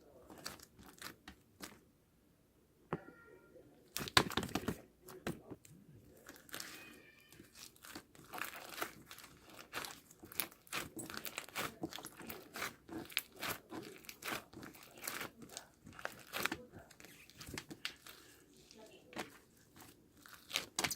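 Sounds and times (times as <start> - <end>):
plastic packaging crinkling: 6.2 - 20.9.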